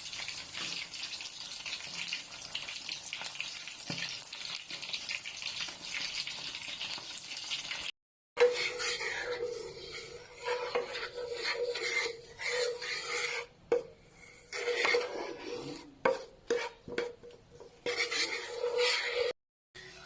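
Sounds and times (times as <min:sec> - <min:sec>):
rasping scraping strokes: 0:08.4 - 0:19.4.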